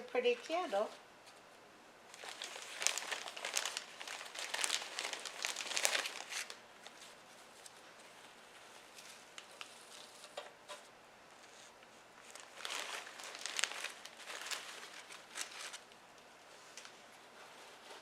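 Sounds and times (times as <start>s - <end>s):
artificial foliage rustling: 2.1s - 10.3s, 11.4s - 18.0s.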